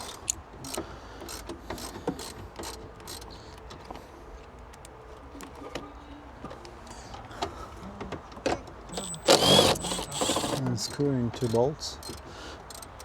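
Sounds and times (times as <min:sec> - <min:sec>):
metallic clicks of hand tools: 0:00.0 - 0:03.3, 0:08.9 - 0:13.0.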